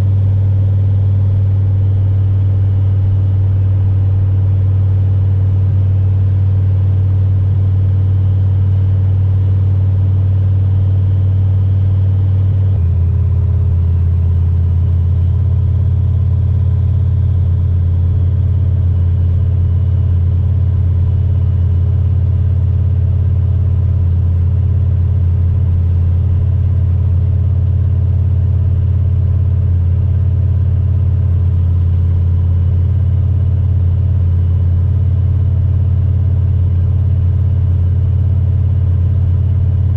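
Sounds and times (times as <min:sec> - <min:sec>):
engine droning at cruise: 0:00.0 - 0:39.9.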